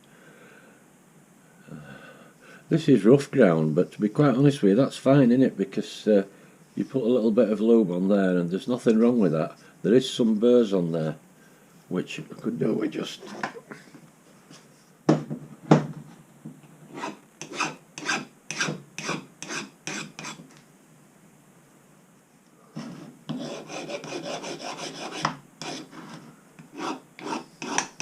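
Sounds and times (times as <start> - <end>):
file scraping metal: 16.9 - 20.4, 22.8 - 28.0.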